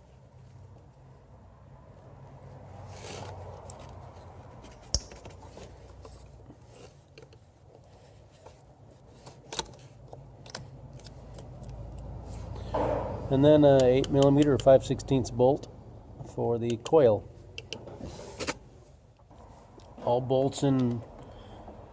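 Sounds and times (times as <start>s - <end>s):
light scraping and handling: 1.9s - 12.8s.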